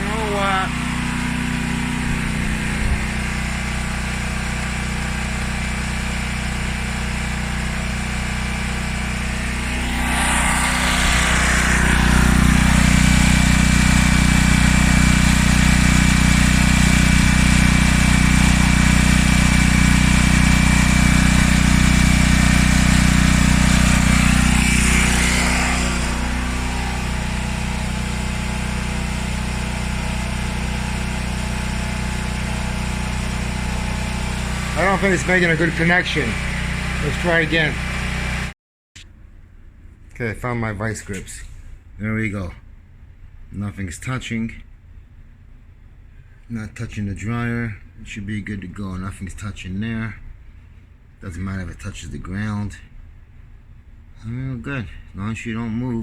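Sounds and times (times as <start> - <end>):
loud steady whine: 0.0 - 37.9
generator engine running: 0.0 - 40.2.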